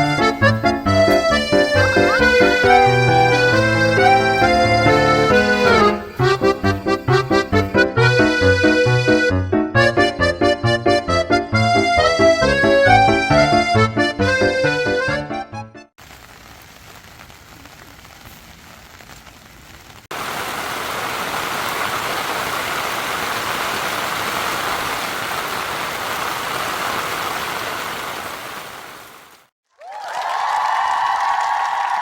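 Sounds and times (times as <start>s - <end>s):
steady rain falling: 0.0s - 9.0s, 16.0s - 29.5s.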